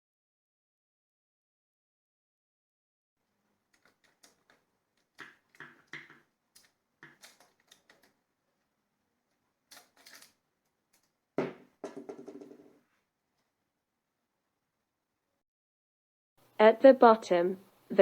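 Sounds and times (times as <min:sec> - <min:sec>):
plastic and metal parts clicking: 0:03.7 - 0:08.2, 0:09.3 - 0:11.2.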